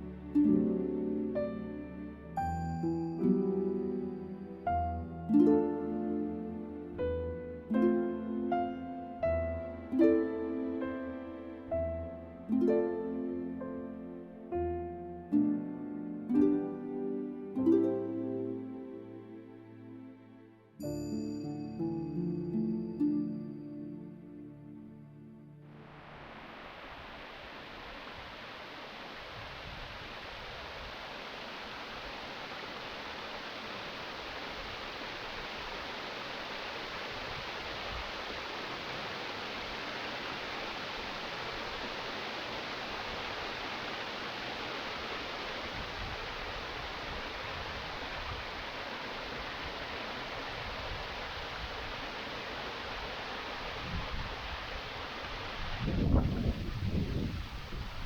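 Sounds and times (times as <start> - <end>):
waterfall rushing: 25.6 - 58.0.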